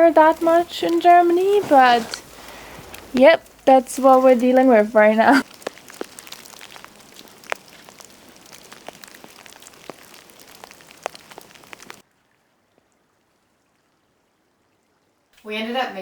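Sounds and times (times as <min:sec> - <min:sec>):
wet snow falling: 0:00.0 - 0:12.1.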